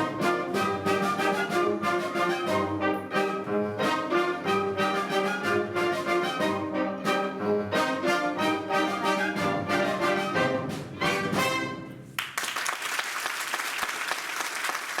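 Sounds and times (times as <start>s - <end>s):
orchestra playing a waltz: 0.0s - 12.0s
audience applauding: 12.2s - 15.0s.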